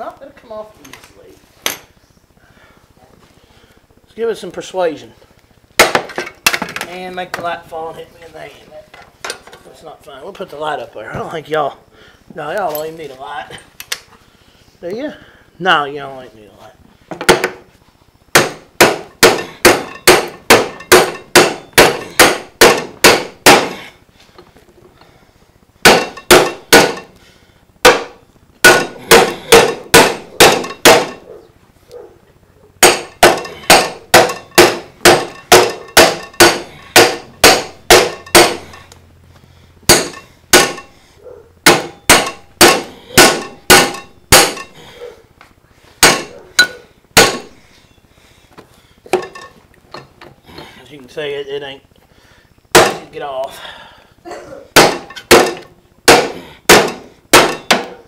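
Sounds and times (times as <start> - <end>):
hammer striking steel hub: 18.4 - 23.8, 25.8 - 27.1, 27.8 - 31.2, 32.8 - 39.0, 39.9 - 41.0, 41.6 - 44.8, 46.0 - 47.6, 52.8 - 53.1, 54.8 - 58.0.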